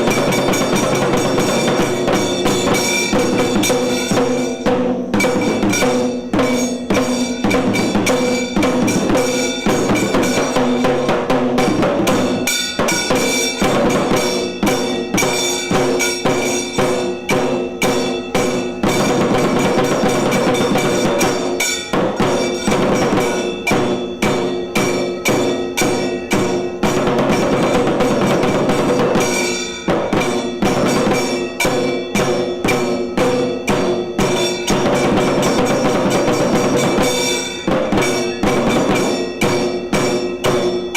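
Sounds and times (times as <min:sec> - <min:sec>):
cymbal strikes: 0:00.0 - 0:40.9
fast dense drumming: 0:00.0 - 0:40.9
steady held tones: 0:00.0 - 0:40.9.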